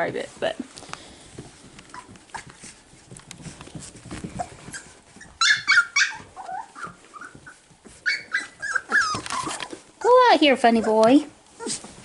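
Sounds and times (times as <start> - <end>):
puppies scuffling: 0.0 - 12.0
puppies yelping and squealing: 4.4 - 10.2, 10.8 - 11.9.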